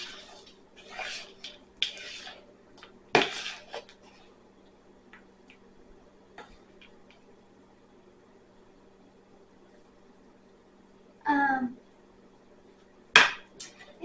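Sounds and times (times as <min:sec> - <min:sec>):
spoon scraping a bowl: 0:00.0 - 0:02.5, 0:03.2 - 0:04.2.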